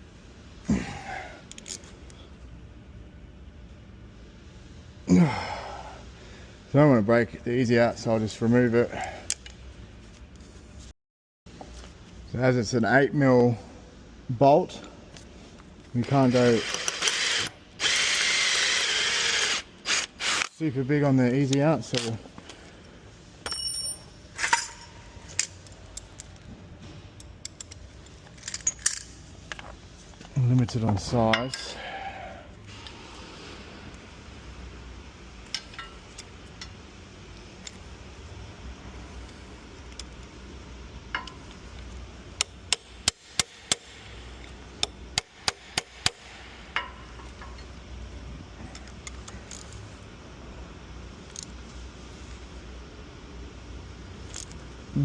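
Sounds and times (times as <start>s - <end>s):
small metal tools clinking: 23.4s - 25.0s.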